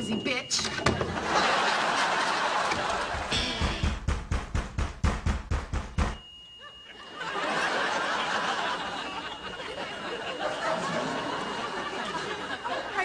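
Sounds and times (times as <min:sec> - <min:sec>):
studio audience laughing: 0:00.8 - 0:03.4, 0:06.6 - 0:13.0
drum-driven music: 0:02.8 - 0:06.2.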